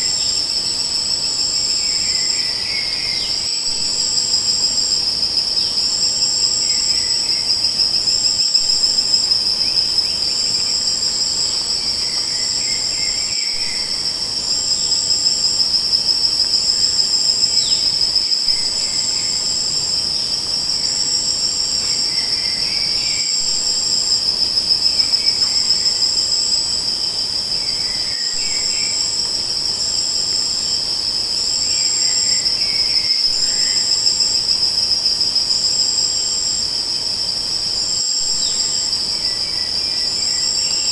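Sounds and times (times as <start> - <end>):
faint insect chirps: 0.0 - 40.9
pulsing higher insect trill: 0.0 - 40.9
steady insect trill: 0.0 - 40.9.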